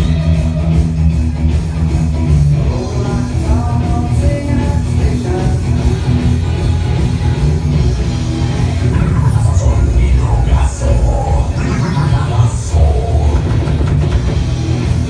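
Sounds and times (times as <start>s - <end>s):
falling high sweep: 8.8s - 14.2s
loud dance music: 8.8s - 14.4s.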